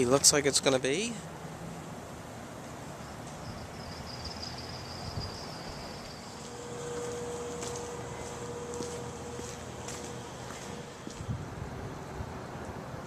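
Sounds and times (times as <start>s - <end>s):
outdoor background hiss: 0.0s - 13.0s
steady low hum: 0.0s - 13.0s
thin high whine: 2.9s - 12.6s.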